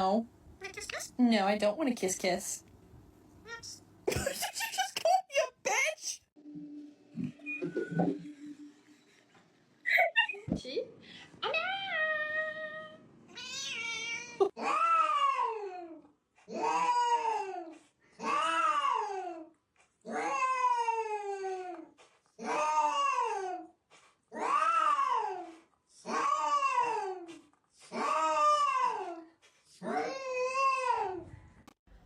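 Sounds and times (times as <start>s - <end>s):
cat meowing: 13.4s - 15.4s.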